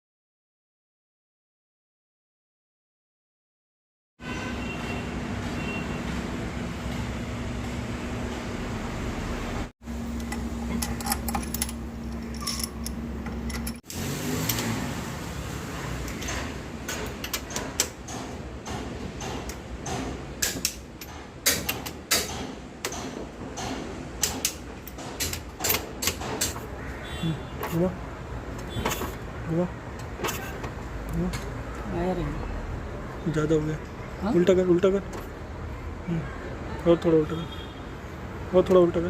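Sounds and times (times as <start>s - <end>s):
sharp metallic clicks: 16.1s - 26.7s.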